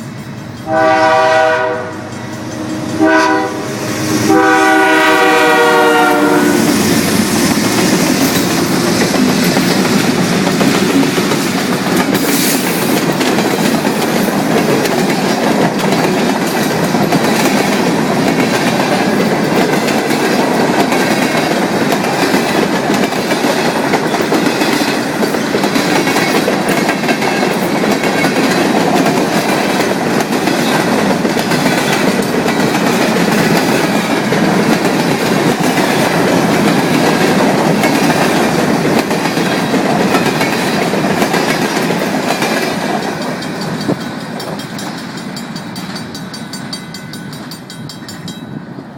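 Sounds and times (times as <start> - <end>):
train wheels rushing on rails: 0.0 - 48.9
locomotive horn blast: 0.6 - 2.1, 3.0 - 6.8.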